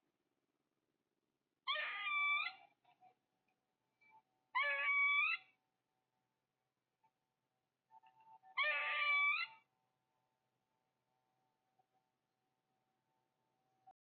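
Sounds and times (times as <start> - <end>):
animal calling: 1.7 - 2.6, 4.6 - 5.5, 8.6 - 9.6.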